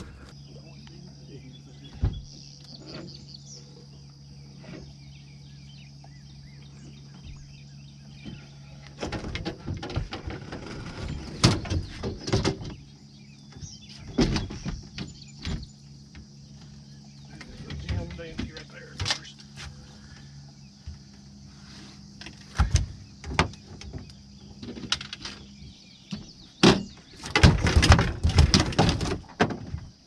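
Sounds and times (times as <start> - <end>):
steady high buzz: 0.0 - 29.2
steady low hum: 0.0 - 30.0
knocks and clattering in a boat: 1.7 - 3.4, 6.0 - 21.4, 22.2 - 30.0.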